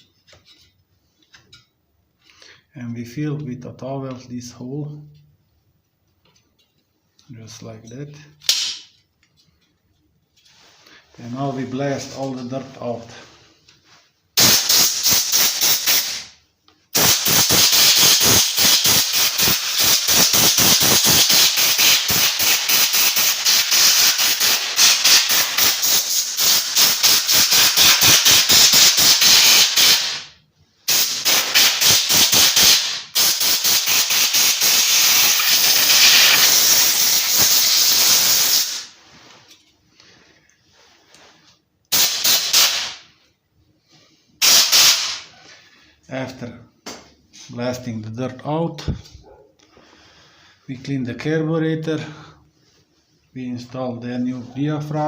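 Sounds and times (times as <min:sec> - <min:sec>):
compressed air blasts: 0:14.4 - 0:16.3, 0:16.9 - 0:39.1, 0:41.9 - 0:43.1, 0:44.4 - 0:45.3.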